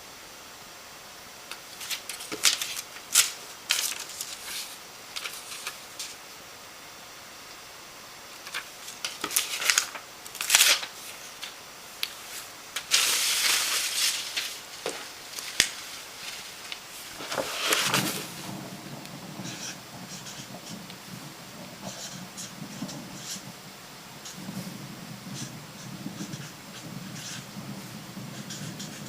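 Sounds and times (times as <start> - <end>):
rustling and crinkling: 1.5 - 6.2, 8.3 - 23.6.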